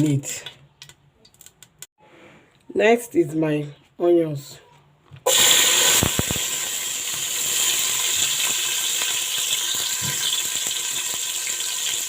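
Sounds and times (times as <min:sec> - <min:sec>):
onions sizzling in oil: 0:05.3 - 0:12.0.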